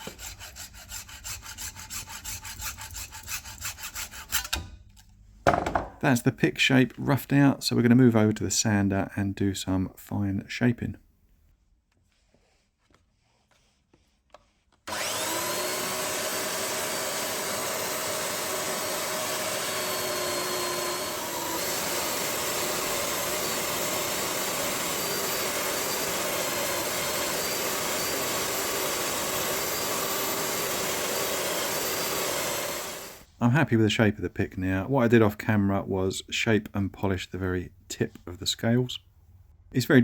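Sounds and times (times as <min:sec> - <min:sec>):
electric sander whirring: 0:14.8 - 0:33.3.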